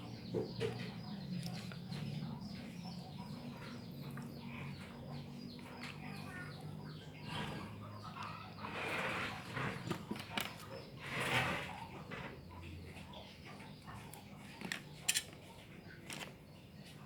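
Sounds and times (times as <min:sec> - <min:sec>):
faint chicken clucking: 0:00.0 - 0:09.6
scratchy handling noises: 0:14.0 - 0:17.0.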